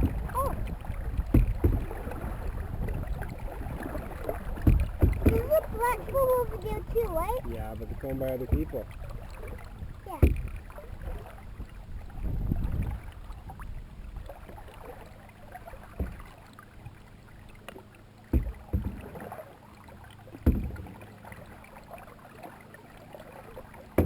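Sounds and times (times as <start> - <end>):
low thumps: 0.0 - 2.1, 4.6 - 7.4, 8.4 - 9.0, 18.4 - 19.1
paddle strokes through water: 0.0 - 24.0.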